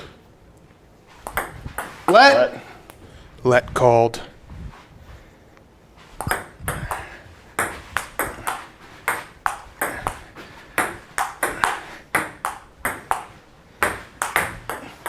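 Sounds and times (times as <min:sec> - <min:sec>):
ping pong ball hits: 0:01.2 - 0:02.5, 0:06.2 - 0:15.0.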